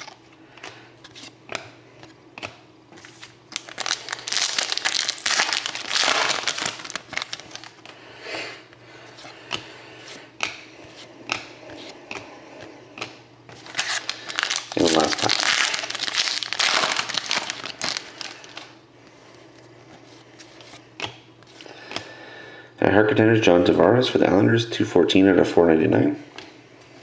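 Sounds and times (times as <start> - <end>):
plastic wrappers crinkling and tearing: 0.0 - 0.2, 3.0 - 7.9, 13.6 - 18.8
cards rustling: 0.0 - 8.0, 13.0 - 18.7.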